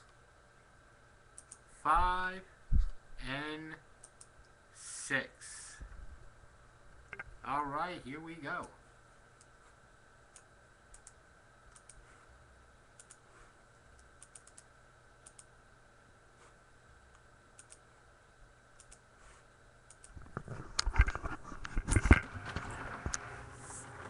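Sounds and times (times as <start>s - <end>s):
faint steady hum: 0.0s - 24.0s
computer mouse clicking: 1.3s - 1.6s, 4.0s - 4.6s, 10.3s - 12.0s, 13.0s - 13.2s, 14.0s - 15.5s, 17.1s - 17.9s, 18.8s - 19.1s, 19.9s - 20.2s.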